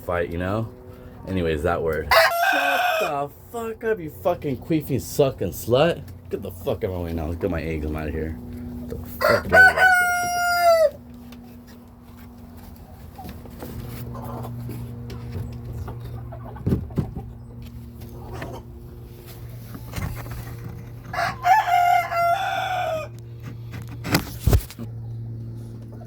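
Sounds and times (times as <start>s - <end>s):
steady low hum: 0.0s - 2.1s, 3.0s - 26.0s
rooster crowing: 2.1s - 3.2s, 9.1s - 11.0s, 21.1s - 23.2s.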